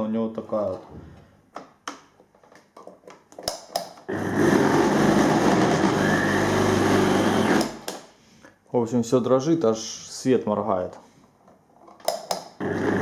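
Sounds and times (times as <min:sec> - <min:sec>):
vacuum cleaner rough hum: 0:04.1 - 0:07.8, 0:12.6 - 0:13.0.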